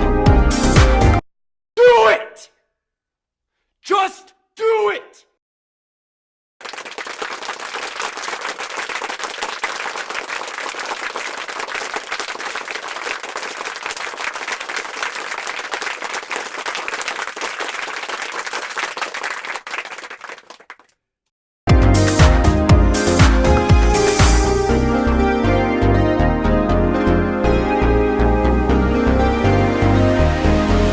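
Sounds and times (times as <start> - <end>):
loud music: 0.0 - 1.2, 21.7 - 30.9
crowd applauding: 6.6 - 20.9, 21.7 - 24.7.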